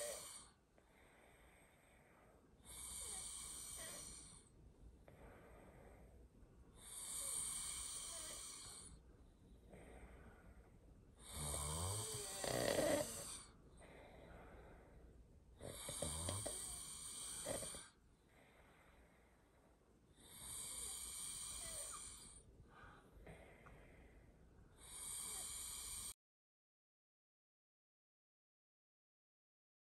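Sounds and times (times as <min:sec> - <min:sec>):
person snoring loudly: 0:00.0 - 0:00.5, 0:02.7 - 0:04.4, 0:06.8 - 0:08.9, 0:11.2 - 0:13.5, 0:15.6 - 0:17.9, 0:20.3 - 0:22.4, 0:24.8 - 0:26.2.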